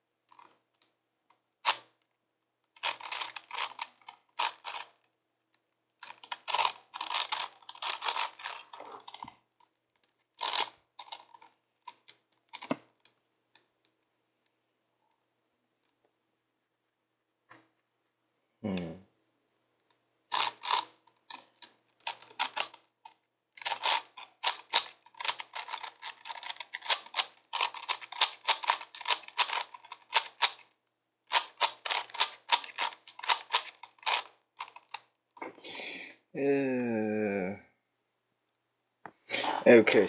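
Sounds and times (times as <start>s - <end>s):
puzzle cube plastic clicks: 2.7s - 5.0s, 6.0s - 9.3s, 10.0s - 13.7s, 20.3s - 35.1s.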